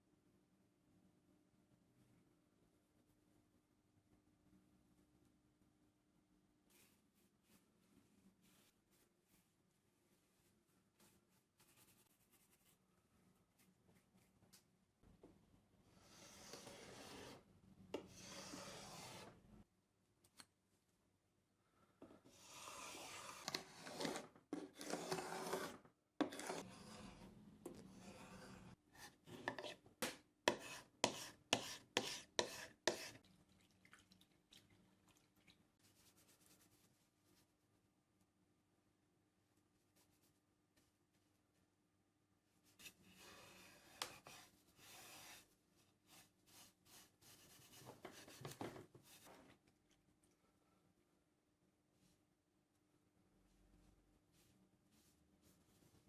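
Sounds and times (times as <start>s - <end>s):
scratchy rubbing on hard surface: 10.4s - 12.8s, 16.0s - 19.4s, 22.3s - 29.8s, 30.5s - 33.2s, 35.8s - 37.1s, 42.7s - 49.4s.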